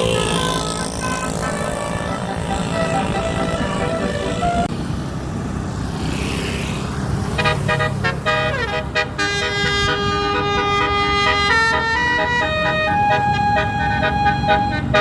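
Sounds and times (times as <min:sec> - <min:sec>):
bus engine running: 0:00.0 - 0:15.0
musical bus air horn: 0:01.5 - 0:04.7, 0:07.4 - 0:15.0.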